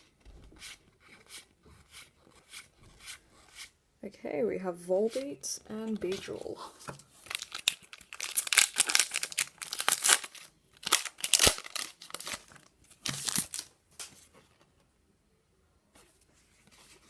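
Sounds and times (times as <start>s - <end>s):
foil wrapper crinkling and tearing: 7.2s - 13.7s.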